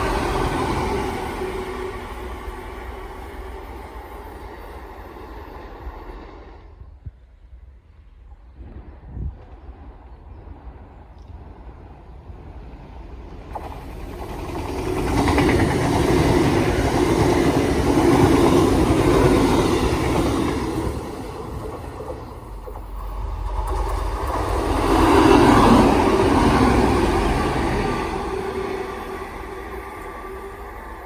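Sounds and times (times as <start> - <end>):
train rail rumble: 0.0 - 31.0.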